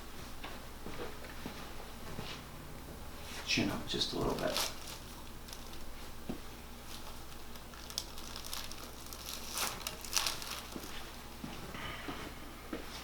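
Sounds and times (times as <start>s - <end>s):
low steady hum: 0.0s - 13.0s
clothing rustling: 6.8s - 11.7s.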